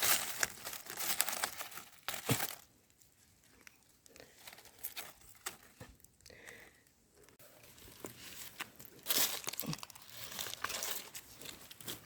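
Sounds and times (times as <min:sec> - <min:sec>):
dry leaves rustling and crackling: 0:00.0 - 0:02.7, 0:07.8 - 0:12.0.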